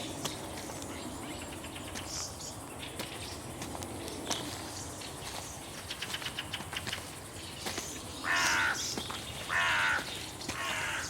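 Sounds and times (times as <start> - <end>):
faint outdoor ambience: 0.0 - 11.0
crow cawing: 8.2 - 11.0.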